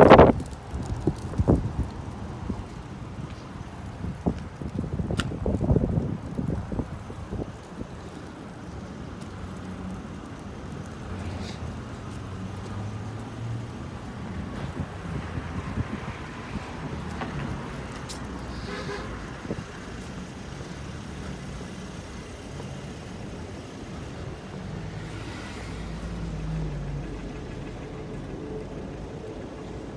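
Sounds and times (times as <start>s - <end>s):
vehicles passing: 0.0s - 29.9s
heavy vehicle rumbling by: 11.1s - 29.9s
car horn toot: 18.5s - 19.3s.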